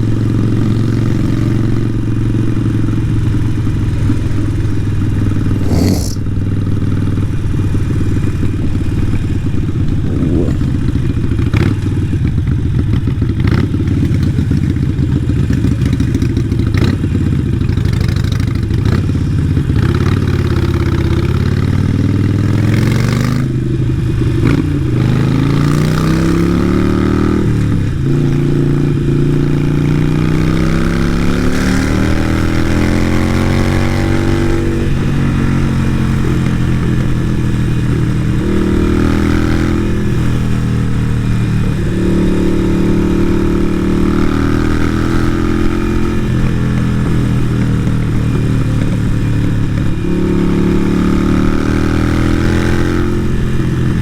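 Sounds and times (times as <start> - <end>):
motorcycle engine: 0.0 - 54.0.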